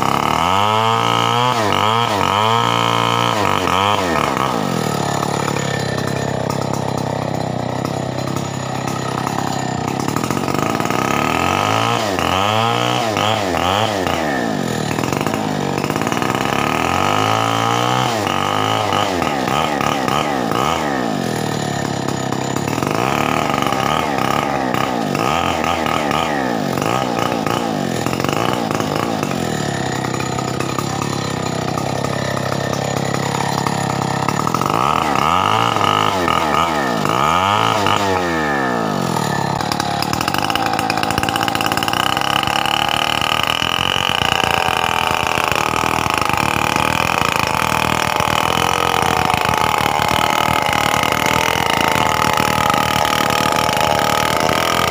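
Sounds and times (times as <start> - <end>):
chainsaw running: 0.0 - 54.9.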